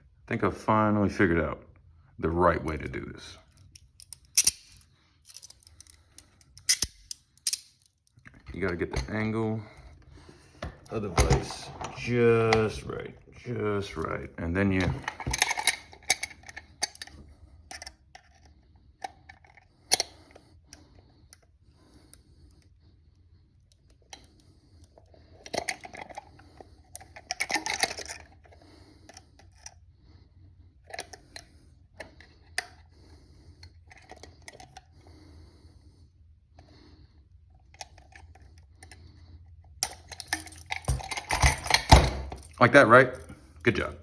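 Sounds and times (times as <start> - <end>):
handcuffs rattling against vise: 2.7 - 20.4, 24.1 - 29.7, 39.8 - 44.0
handcuffs clicking: 3.5 - 9.2, 14.8 - 18.4, 19.0 - 20.4, 39.8 - 44.0.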